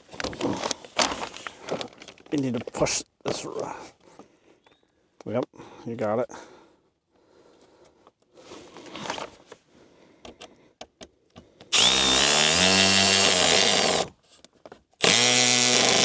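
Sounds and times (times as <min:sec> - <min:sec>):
cordless drill driving a screw: 0:11.7 - 0:14.1, 0:15.0 - 0:16.0.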